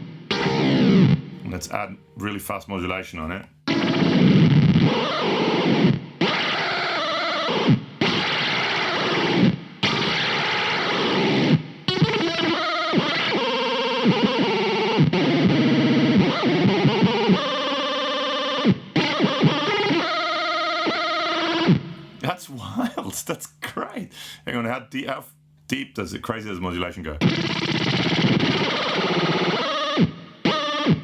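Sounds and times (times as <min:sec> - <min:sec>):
distorted warbling electric guitar: 0:00.0 - 0:02.2, 0:03.7 - 0:22.2, 0:27.2 - 0:31.0.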